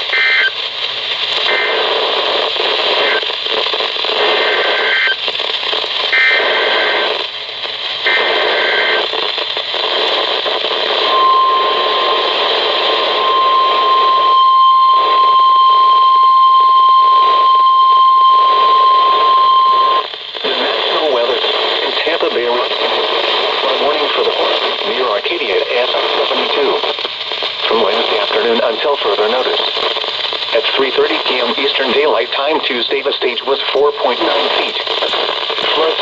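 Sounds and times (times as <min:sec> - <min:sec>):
radio static: 0:00.0 - 0:36.0
steady warning alarm tone: 0:11.0 - 0:12.3, 0:13.0 - 0:20.0.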